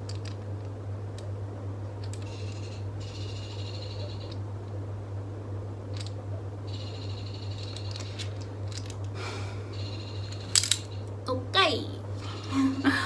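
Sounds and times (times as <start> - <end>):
steady low hum: 0.0 - 13.0
high buzzing chirp: 2.2 - 4.4, 6.6 - 8.3.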